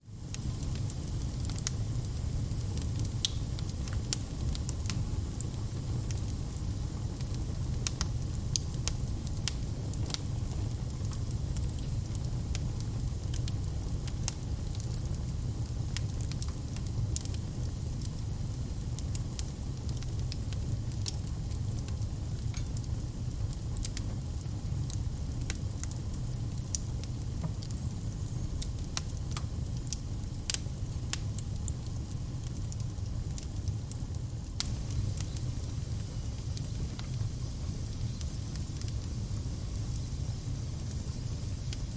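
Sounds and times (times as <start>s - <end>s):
wood fire crackling: 0.1s - 41.9s.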